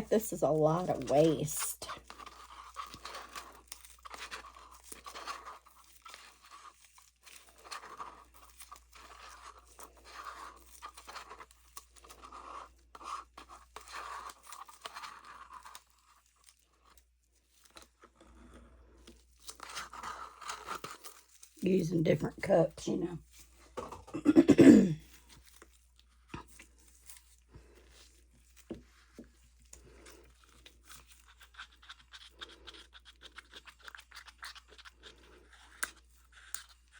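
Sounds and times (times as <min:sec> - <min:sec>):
plastic cups scraped with stick: 0:00.0 - 0:24.4, 0:25.0 - 0:36.9.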